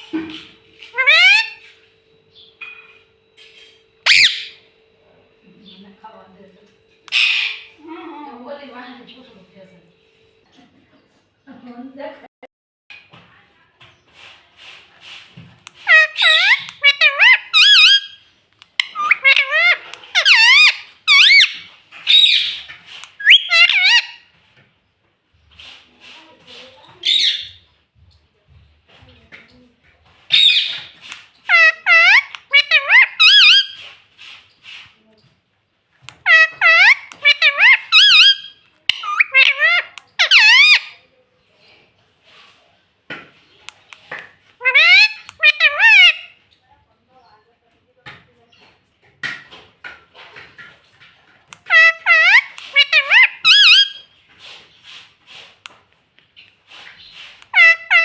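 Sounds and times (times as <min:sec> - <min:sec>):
parrot high sliding calls: 0:00.9 - 0:01.6, 0:04.1 - 0:04.6, 0:15.8 - 0:18.2, 0:18.8 - 0:24.2, 0:31.5 - 0:33.8, 0:36.2 - 0:41.0, 0:44.6 - 0:46.3, 0:51.6 - 0:54.1, 0:57.4 - 0:58.0
parakeet harsh squawk: 0:01.0 - 0:01.6, 0:04.1 - 0:04.6, 0:07.1 - 0:07.7, 0:15.8 - 0:18.2, 0:18.8 - 0:22.6, 0:23.2 - 0:24.3, 0:31.5 - 0:33.8, 0:36.2 - 0:41.0, 0:44.6 - 0:46.4, 0:51.6 - 0:54.1, 0:57.5 - 0:58.0.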